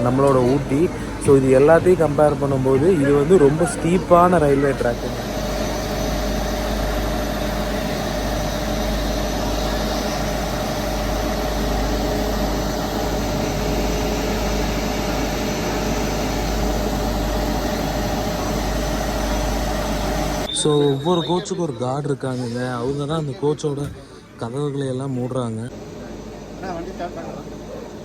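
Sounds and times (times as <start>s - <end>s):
train running rumble: 0.0s - 21.0s.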